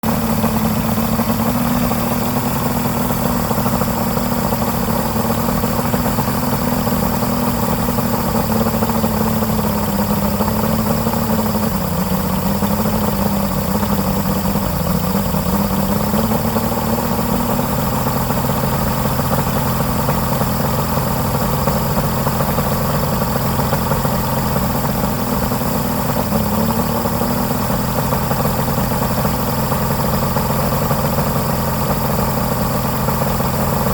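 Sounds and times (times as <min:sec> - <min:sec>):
outboard motor idling: 0:00.0 - 0:33.9.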